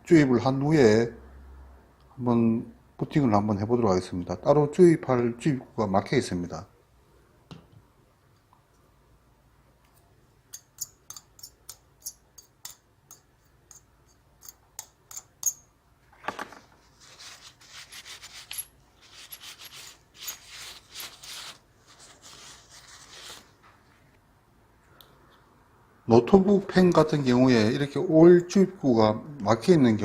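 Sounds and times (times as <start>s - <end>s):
rubbing and scraping: 16.8s - 23.6s.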